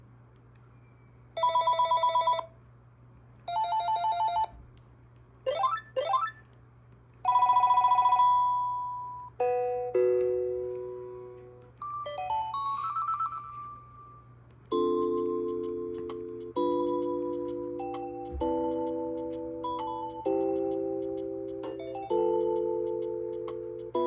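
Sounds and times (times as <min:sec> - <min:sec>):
cordless phone electronic ringtones: 0:01.4 - 0:02.5, 0:03.5 - 0:04.5, 0:07.3 - 0:10.0, 0:11.8 - 0:19.0.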